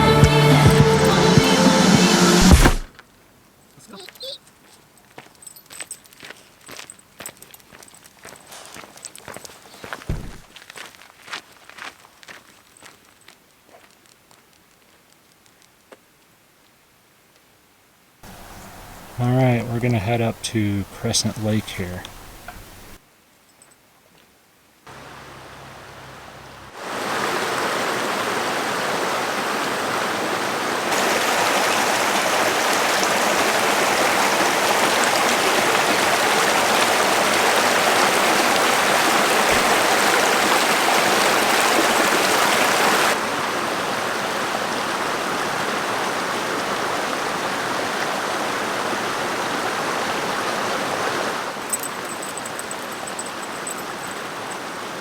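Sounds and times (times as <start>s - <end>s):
creek water rushing: 0.0s - 2.9s, 18.2s - 23.0s, 24.9s - 55.0s.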